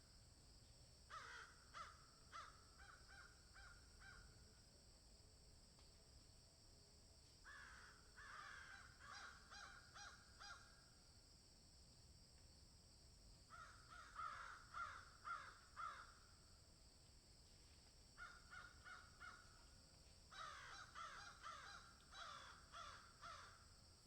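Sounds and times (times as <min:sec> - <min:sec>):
crows cawing: 0:01.1 - 0:04.2, 0:07.5 - 0:10.7, 0:13.5 - 0:16.2, 0:18.2 - 0:19.6, 0:20.3 - 0:23.6.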